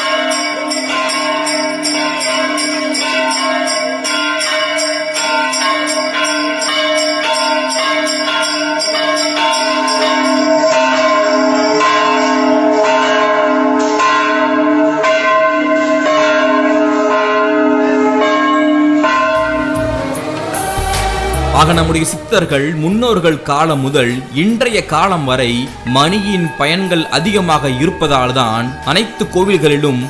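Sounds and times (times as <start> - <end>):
large bell ringing: 0.0 - 30.0.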